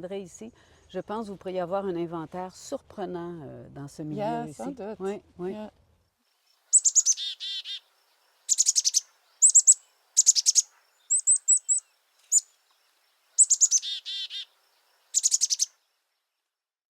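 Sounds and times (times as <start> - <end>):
songbird chirping: 0.0 - 16.6.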